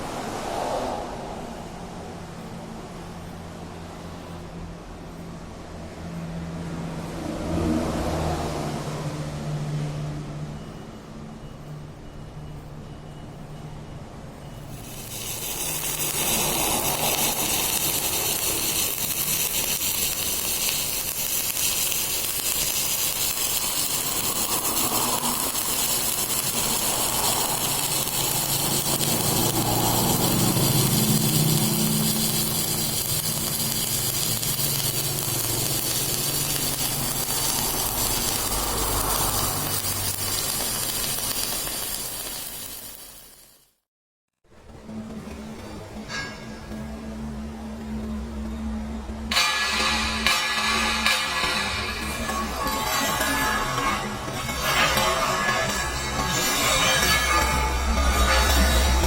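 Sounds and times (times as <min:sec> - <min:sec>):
arc welding hiss: 0:14.6 - 0:43.7, 0:49.3 - 0:59.0.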